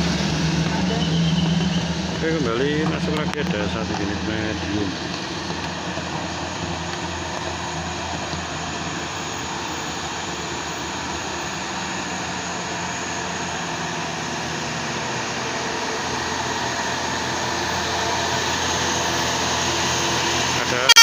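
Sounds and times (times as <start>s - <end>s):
bus diesel engine climbing uphill: 0.0s - 21.0s.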